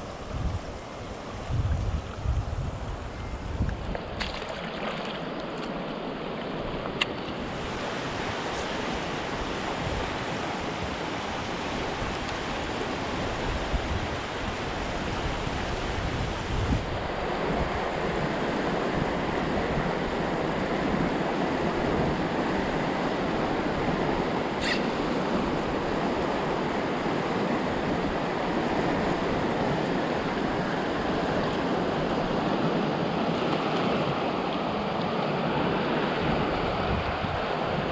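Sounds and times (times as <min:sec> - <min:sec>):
water rushing over rocks: 0:03.7 - 0:16.0.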